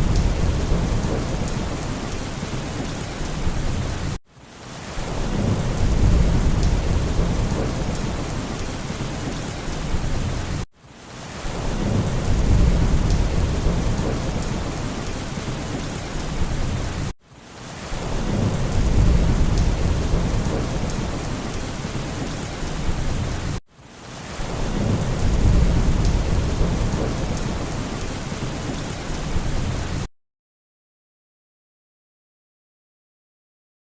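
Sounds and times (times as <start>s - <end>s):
rumbling thunder: 0.0s - 4.1s, 5.0s - 10.6s, 11.5s - 17.1s, 18.0s - 23.6s, 24.4s - 28.5s
steady rain: 0.0s - 30.1s.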